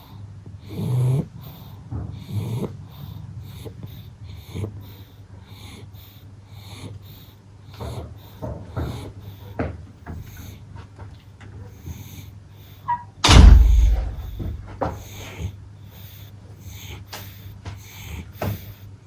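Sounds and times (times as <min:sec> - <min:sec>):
pug snorting and snuffling: 0:00.0 - 0:10.7, 0:11.6 - 0:12.8, 0:15.0 - 0:18.9
loud low thump: 0:13.2 - 0:14.9.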